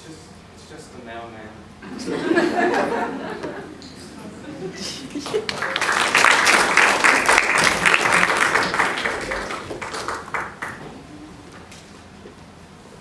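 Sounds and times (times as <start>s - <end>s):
audience applauding: 4.7s - 11.0s.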